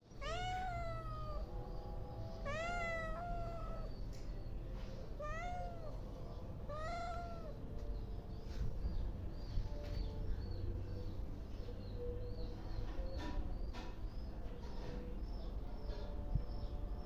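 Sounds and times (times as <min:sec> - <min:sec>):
cat meowing: 0:00.1 - 0:01.6, 0:02.4 - 0:04.0, 0:05.2 - 0:07.6.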